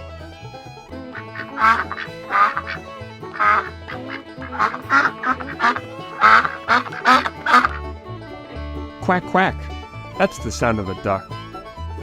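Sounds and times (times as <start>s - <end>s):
bluegrass music: 0.0s - 12.0s
duck quacking: 1.2s - 7.9s.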